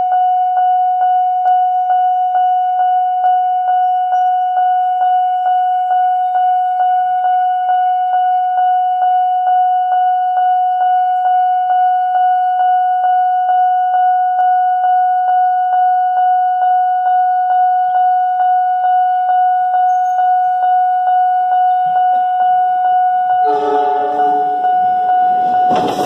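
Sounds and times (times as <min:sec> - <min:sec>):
level-crossing warning bell ringing: 0:19.1 - 0:26.0.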